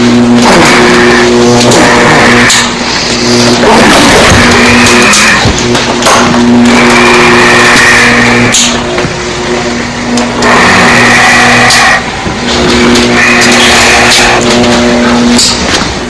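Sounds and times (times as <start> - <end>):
monster screaming: 0.4 - 5.5, 10.4 - 12.0.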